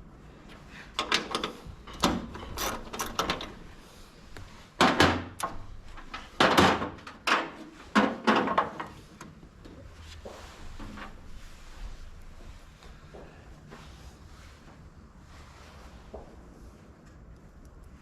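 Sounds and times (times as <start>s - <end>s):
metal hardware clattering: 1.0s - 3.6s.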